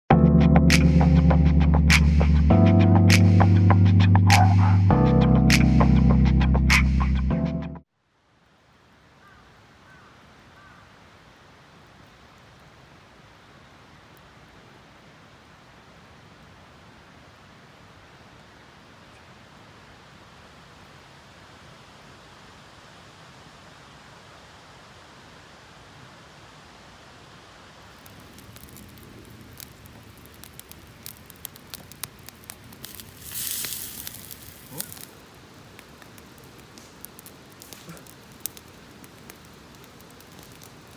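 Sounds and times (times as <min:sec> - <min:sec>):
outdoor background hiss: 0:07.8 - 0:40.9
campfire crackling: 0:27.7 - 0:40.9
fire hissing: 0:27.8 - 0:40.9
sharp pops: 0:28.1 - 0:40.9.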